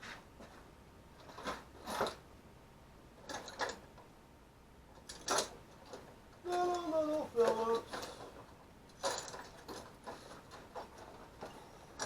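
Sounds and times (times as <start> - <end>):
hand tools clicking and rattling: 5.0 - 12.0.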